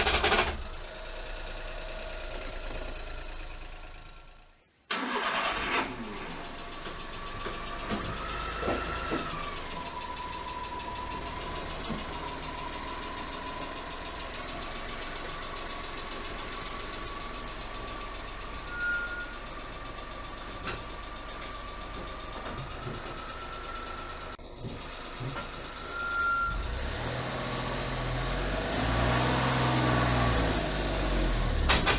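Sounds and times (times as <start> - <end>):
engine knocks: 0.0 - 1.0, 6.6 - 25.8, 30.9 - 31.9
van engine running: 0.0 - 31.9.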